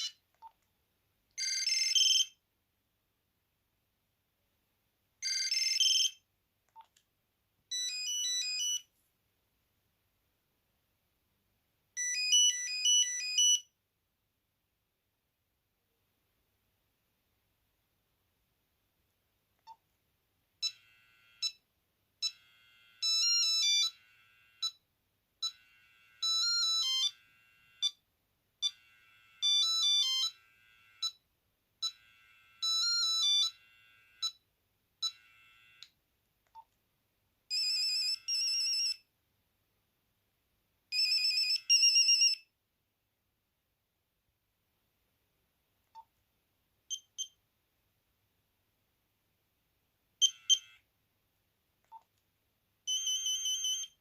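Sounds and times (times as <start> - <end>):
monophonic ringtone melody: 1.4 - 2.3, 7.7 - 8.8, 12.0 - 13.6, 23.0 - 24.0, 26.2 - 27.2, 29.4 - 31.2, 32.6 - 33.6, 52.9 - 53.9.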